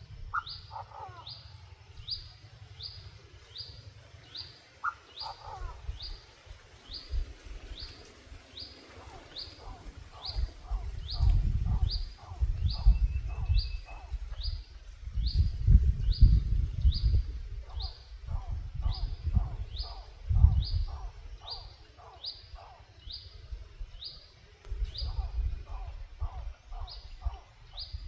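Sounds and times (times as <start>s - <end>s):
bird call through loudspeaker: 4.3s - 6.2s.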